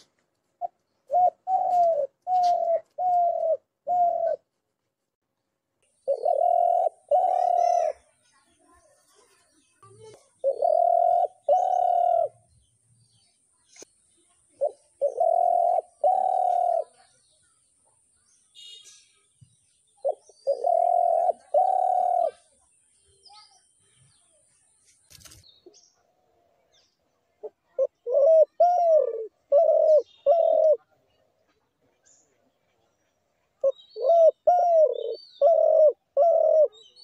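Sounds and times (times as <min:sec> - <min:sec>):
small birds chirping: 0:00.0 - 0:37.0
dove cooing: 0:00.6 - 0:04.4, 0:06.0 - 0:08.0, 0:10.4 - 0:12.4, 0:14.5 - 0:17.1, 0:20.0 - 0:22.5, 0:27.4 - 0:30.8, 0:33.6 - 0:36.9.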